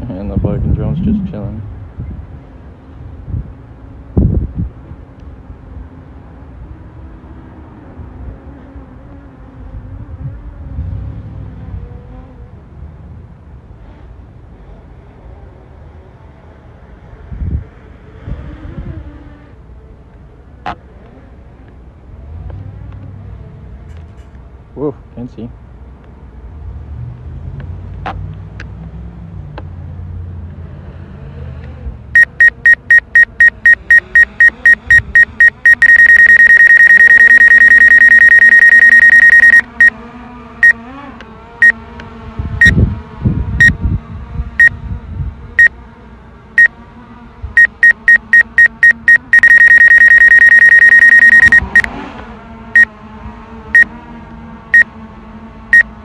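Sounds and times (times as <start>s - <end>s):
wind rumble on microphone: 0.0s - 5.1s, 9.6s - 13.4s, 17.2s - 19.3s, 42.2s - 45.6s
remote controller warning beeps: 32.2s - 39.9s, 47.6s - 51.9s.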